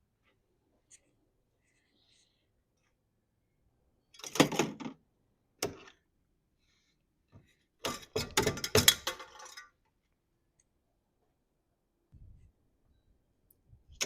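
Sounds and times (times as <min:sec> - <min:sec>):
metal tools clinking and knocking: 0:07.8 - 0:09.8.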